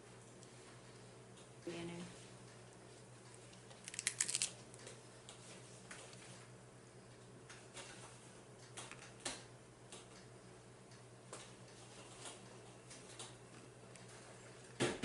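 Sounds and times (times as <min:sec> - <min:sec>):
person chewing crunchy food: 0:03.6 - 0:04.6.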